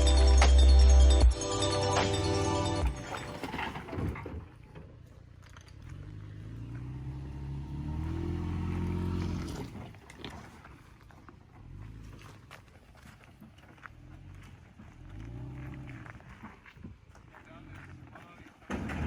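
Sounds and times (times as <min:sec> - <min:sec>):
pickup engine pulling under throttle: 0:05.7 - 0:12.6, 0:13.8 - 0:16.7.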